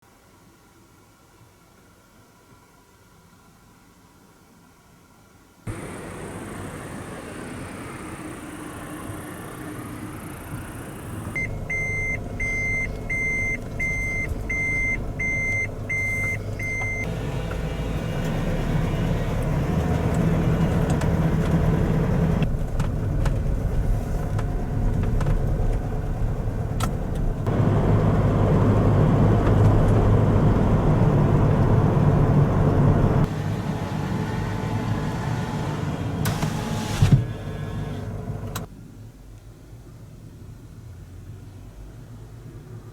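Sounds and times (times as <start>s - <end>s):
engine running: 5.7s - 38.7s
reversing alarm beeps: 11.4s - 17.1s.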